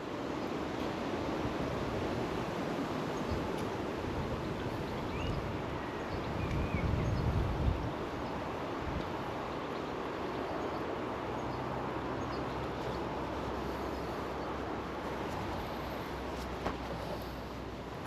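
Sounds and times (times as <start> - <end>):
wind: 0.0 - 18.0
river water rushing: 7.6 - 18.0.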